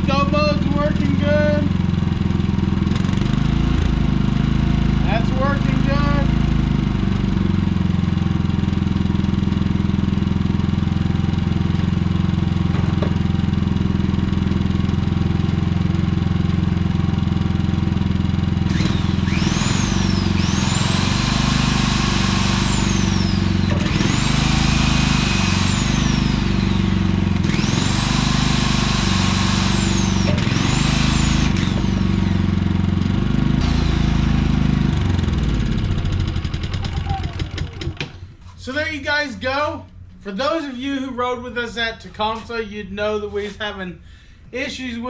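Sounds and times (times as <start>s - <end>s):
generator engine running: 0.0s - 42.5s
high-pitched electric motor: 18.7s - 32.6s, 33.6s - 35.7s.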